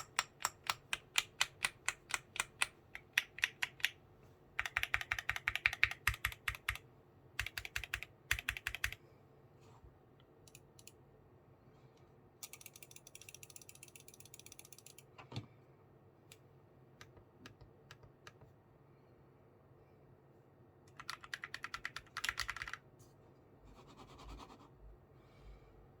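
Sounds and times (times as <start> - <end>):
typing on mechanical keyboard: 0.0 - 4.0, 4.6 - 6.8, 7.4 - 9.0, 20.9 - 22.8.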